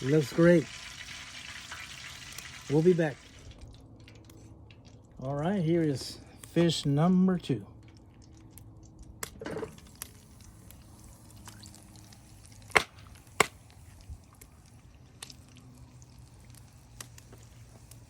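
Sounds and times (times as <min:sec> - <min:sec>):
fish sizzling in hot oil: 0:00.0 - 0:03.5, 0:09.6 - 0:18.0
sharp pops from frying oil: 0:00.7 - 0:02.7, 0:09.1 - 0:18.0.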